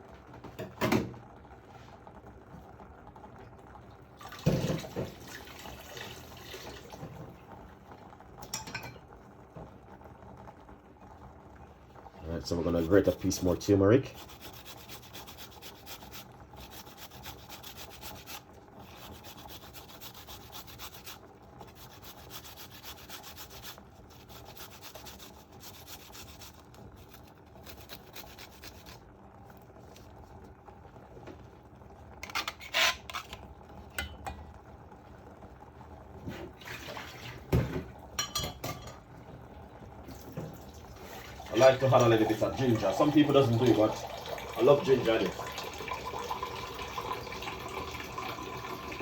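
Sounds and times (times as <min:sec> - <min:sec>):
root rasping on a grater: 0:14.1 - 0:29.0.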